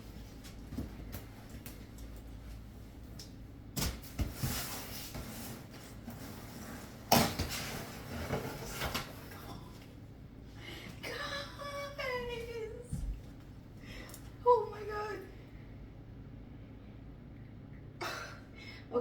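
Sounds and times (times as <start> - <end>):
packaging rustling and scraping: 4.0 - 9.4.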